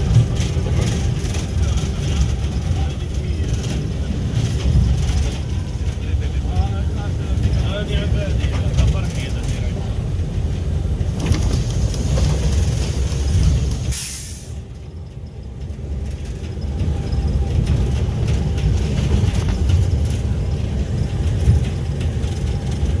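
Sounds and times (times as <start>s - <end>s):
diesel locomotive rumbling: 0.0s - 23.0s
short burst of hiss: 13.9s - 14.6s.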